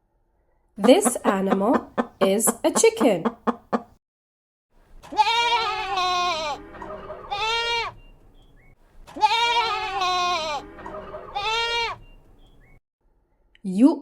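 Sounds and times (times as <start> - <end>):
goat bleating: 5.1 - 6.6, 7.2 - 8.0, 9.2 - 10.6, 11.3 - 12.0.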